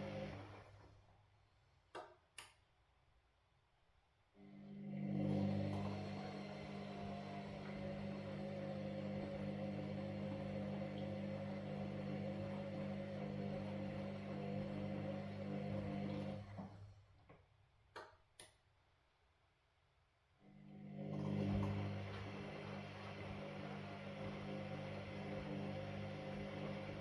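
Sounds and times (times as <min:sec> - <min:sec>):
washing machine running: 0:00.0 - 0:01.1, 0:04.4 - 0:17.0, 0:20.6 - 0:27.0.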